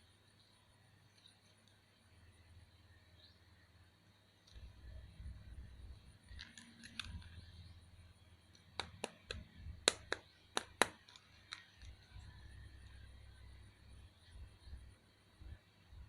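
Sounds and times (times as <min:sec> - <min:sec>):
rustling and handling noise: 0:06.0 - 0:07.6, 0:08.5 - 0:13.1
sharp plastic clicks and snaps: 0:06.3 - 0:07.5, 0:08.5 - 0:12.3.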